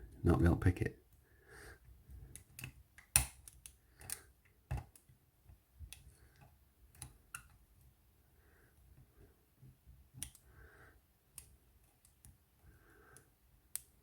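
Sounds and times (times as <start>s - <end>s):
small metallic lock pick clicks: 2.3s - 5.1s, 6.9s - 7.6s, 10.2s - 10.4s, 13.2s - 14.0s.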